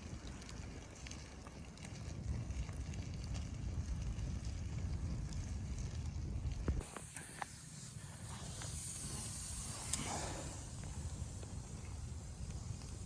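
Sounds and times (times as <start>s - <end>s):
wind buffeting microphone: 0.0s - 6.9s.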